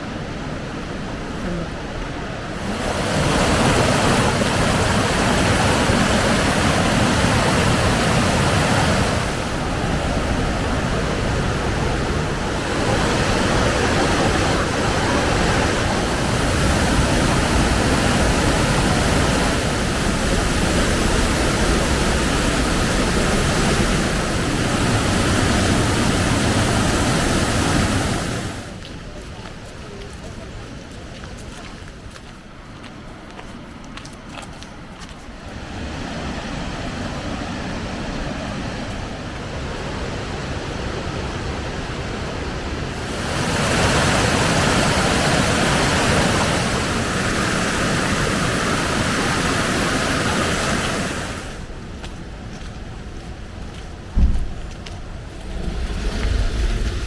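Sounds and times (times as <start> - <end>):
waterfall rushing: 1.8 - 28.9, 35.6 - 51.7, 54.1 - 57.0.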